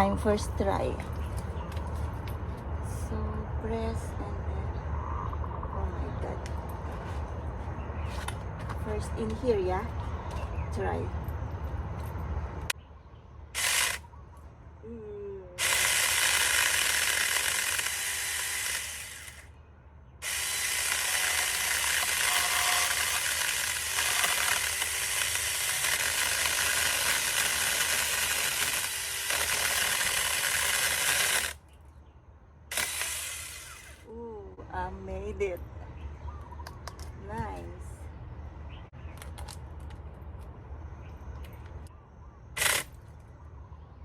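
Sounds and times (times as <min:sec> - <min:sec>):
mini chainsaw cutting wood: 0:13.6 - 0:14.0, 0:15.6 - 0:19.5, 0:20.2 - 0:31.6, 0:32.7 - 0:34.1, 0:42.6 - 0:42.9.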